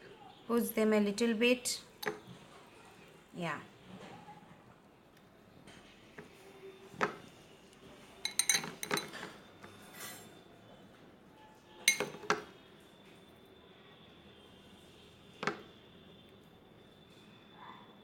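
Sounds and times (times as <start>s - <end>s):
utensil clinking against dish: 2.0s - 2.2s, 8.2s - 10.4s, 11.9s - 12.5s.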